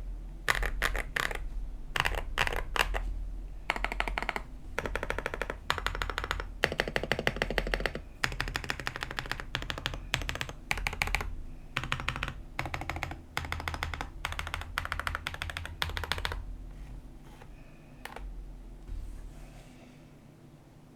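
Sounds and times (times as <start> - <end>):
mechanical keyboard typing: 0.4 - 3.1, 3.7 - 16.4, 17.3 - 18.3.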